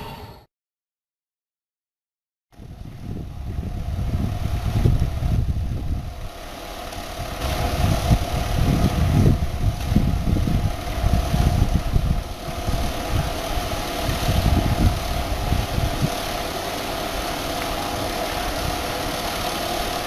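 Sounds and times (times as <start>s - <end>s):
excavator diesel engine running: 6.2s - 20.0s.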